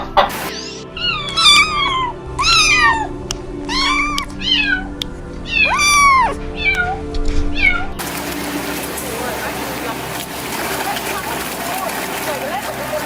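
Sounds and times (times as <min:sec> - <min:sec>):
soft background music: 0:00.0 - 0:13.0
cat meowing: 0:00.5 - 0:08.0.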